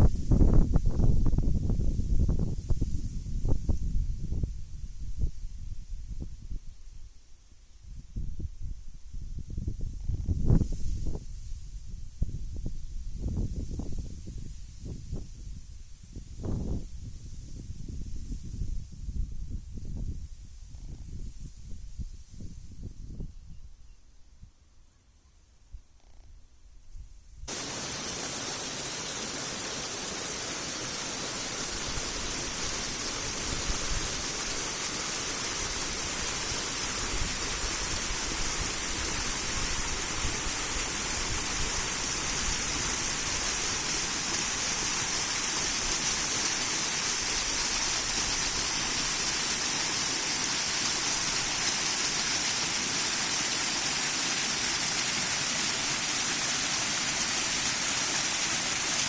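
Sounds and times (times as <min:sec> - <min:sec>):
water pouring over a dam: 0:27.5 - 0:59.0.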